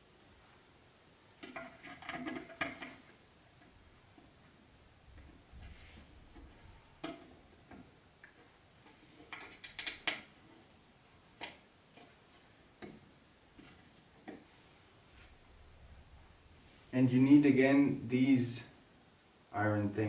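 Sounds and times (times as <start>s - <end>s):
wooden furniture parts clicking: 1.4s - 4.4s, 6.3s - 14.6s.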